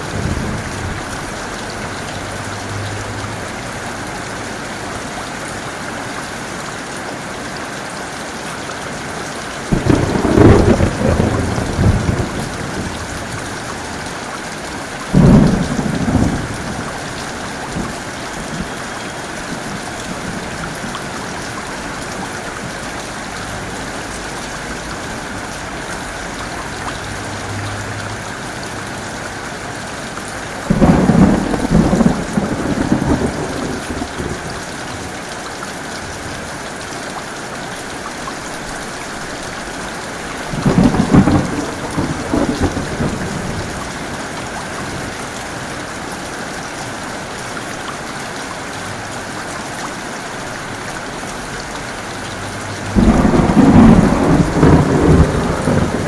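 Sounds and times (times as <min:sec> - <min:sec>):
thunder claps: 0:00.0 - 0:03.5, 0:09.7 - 0:13.8, 0:15.1 - 0:18.8, 0:30.7 - 0:34.5, 0:40.5 - 0:44.0, 0:52.9 - 0:56.0
heavy rain falling: 0:00.0 - 0:56.0.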